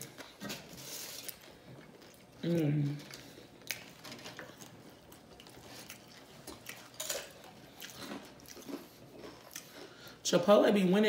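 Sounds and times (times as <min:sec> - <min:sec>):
eating sounds: 0:00.0 - 0:10.2.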